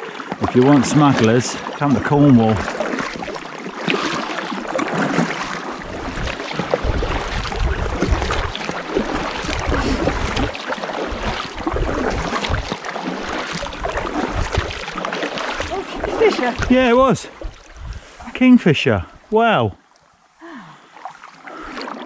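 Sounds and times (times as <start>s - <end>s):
water dripping and splashing: 0.0s - 18.6s, 20.9s - 22.0s
paddle dipping into water: 0.0s - 22.0s
low rumble: 5.9s - 8.5s.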